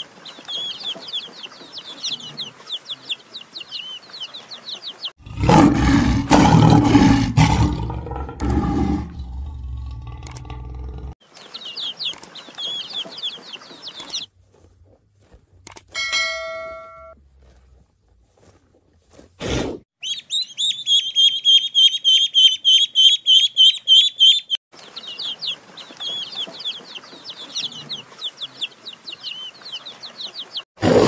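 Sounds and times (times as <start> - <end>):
bird chirping: 0.0 - 5.1, 11.2 - 14.3, 20.0 - 30.7.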